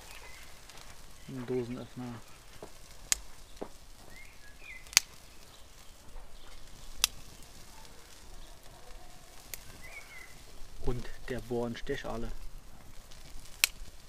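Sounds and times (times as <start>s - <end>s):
sharp clicks: 2.5s - 5.9s, 6.6s - 7.4s, 13.0s - 14.0s.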